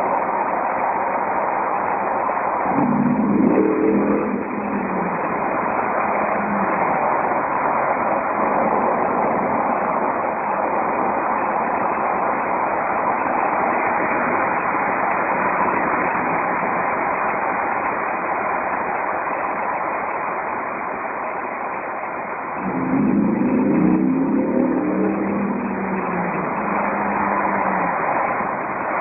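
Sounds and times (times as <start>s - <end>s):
car rushing roar in tunnel: 0.0s - 29.0s.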